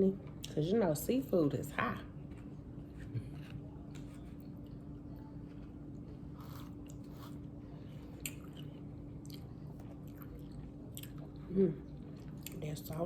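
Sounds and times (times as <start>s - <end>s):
steady low hum: 0.0s - 13.0s
person chewing food: 2.2s - 12.6s.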